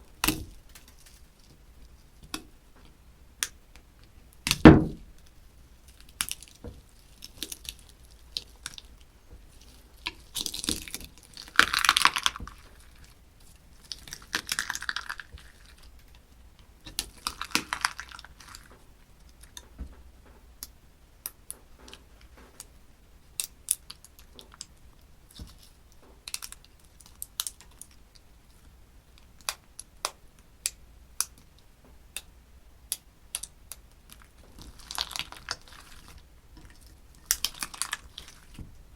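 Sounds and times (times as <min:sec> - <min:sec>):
slime crackling and squishing: 0:05.3 - 0:19.7, 0:33.3 - 0:38.9.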